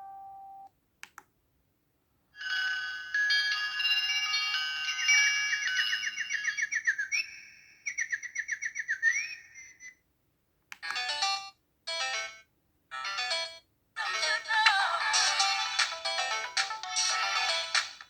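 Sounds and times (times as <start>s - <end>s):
synth ringtone falling chirps: 4.6s - 7.8s
ringtone chord bursts: 10.9s - 12.4s.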